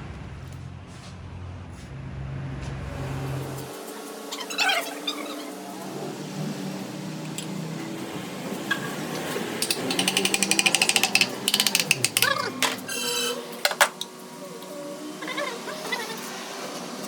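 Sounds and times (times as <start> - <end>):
ratchet wrench clicking: 9.6 - 12.8
short high squeaks: 9.7 - 13.6.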